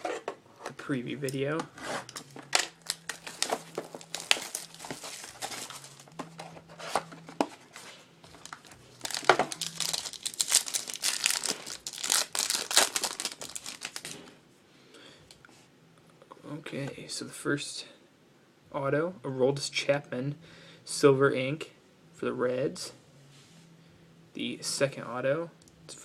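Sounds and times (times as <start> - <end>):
wrapper crinkling and tearing: 2.0 - 7.2, 8.3 - 14.3.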